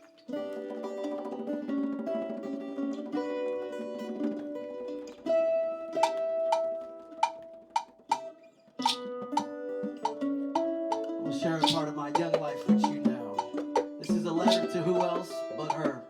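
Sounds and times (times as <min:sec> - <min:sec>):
plucked string melody: 0:00.0 - 0:16.0
sharp percussive strokes: 0:06.0 - 0:16.0.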